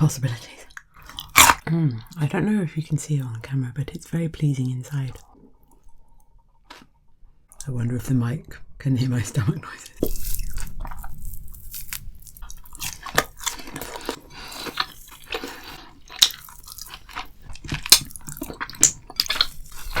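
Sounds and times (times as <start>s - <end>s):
chewing with mouth clicks: 0.7s - 2.2s, 9.9s - 20.0s.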